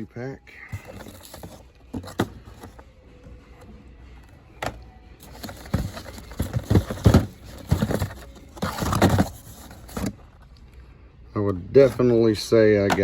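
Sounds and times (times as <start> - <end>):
packages knocking and rustling: 0.7 - 3.0, 4.5 - 10.4.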